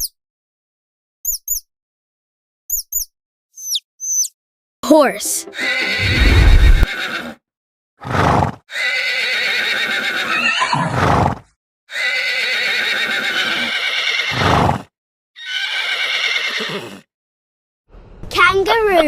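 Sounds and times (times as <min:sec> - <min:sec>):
horse whinnying: 0:05.5 - 0:07.4, 0:08.0 - 0:17.1.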